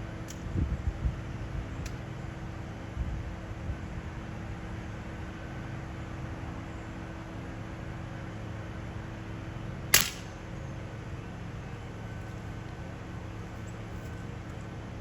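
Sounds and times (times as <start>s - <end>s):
steady background noise: 0.0s - 15.0s
air rifle shot crack: 10.0s - 10.5s.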